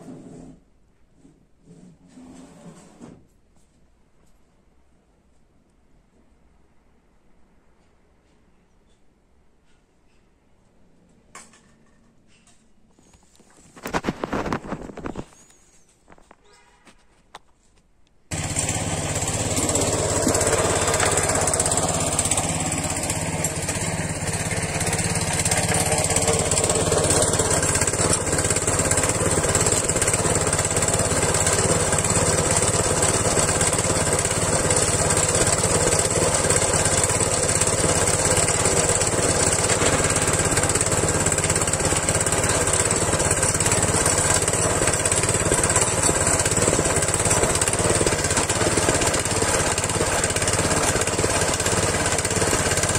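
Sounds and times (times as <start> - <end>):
small tiller engine running: 13.8 - 15.3, 18.3 - 52.9.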